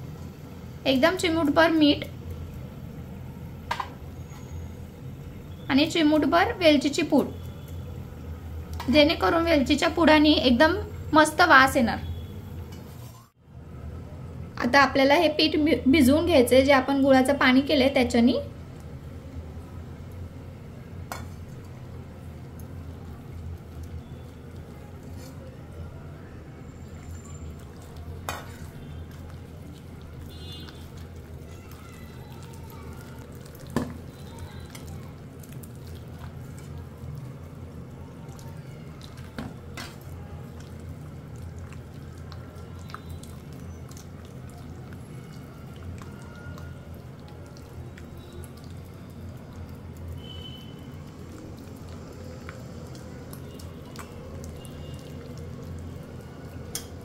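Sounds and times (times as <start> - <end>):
batter being stirred in a bowl: 18.6 - 57.0.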